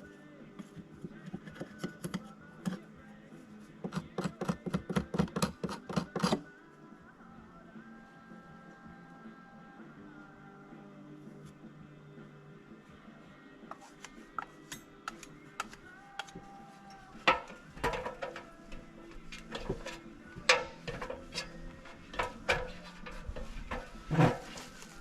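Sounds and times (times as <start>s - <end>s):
faint background music: 0.0s - 25.0s
objects clicking and knocking: 13.7s - 25.0s.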